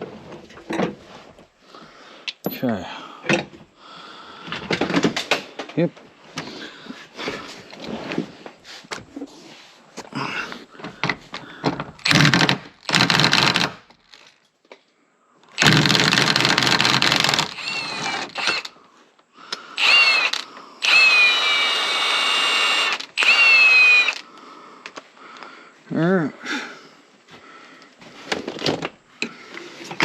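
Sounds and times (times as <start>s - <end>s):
power tool bursts with motor whine: 15.6s - 18.7s, 19.8s - 24.2s.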